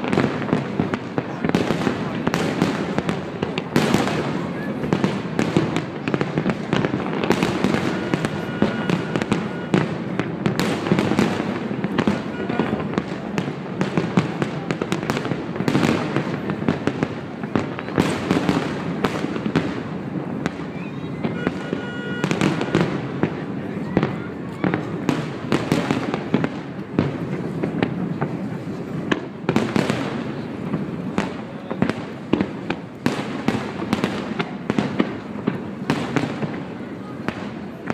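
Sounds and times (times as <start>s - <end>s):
fireworks bangs and crackling: 0.0s - 37.9s
faint whistling tones: 20.7s - 21.5s.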